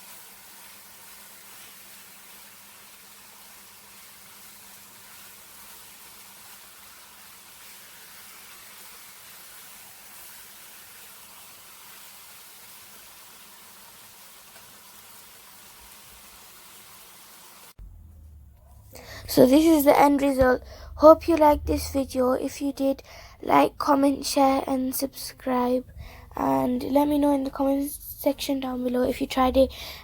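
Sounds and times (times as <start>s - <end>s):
chicken sizzling in a pan: 0.0s - 17.8s.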